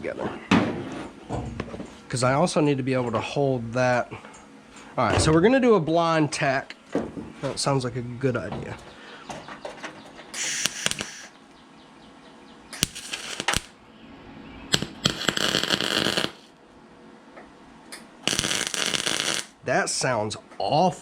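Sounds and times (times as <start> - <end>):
welder arc crackle: 10.4 - 11.4, 12.7 - 13.8, 14.7 - 16.6, 18.2 - 19.5.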